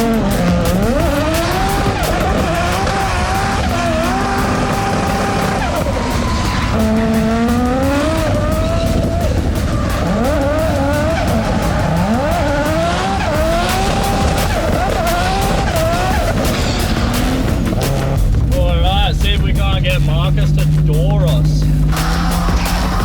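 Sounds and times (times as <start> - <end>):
tyre squeal: 0.0 - 18.2, 21.9 - 23.0
car engine revving: 0.0 - 23.0.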